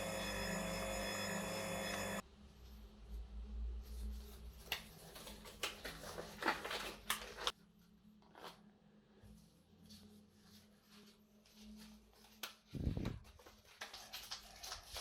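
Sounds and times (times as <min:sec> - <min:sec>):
packaging crinkling and rustling: 0:04.5 - 0:07.6, 0:12.2 - 0:15.0.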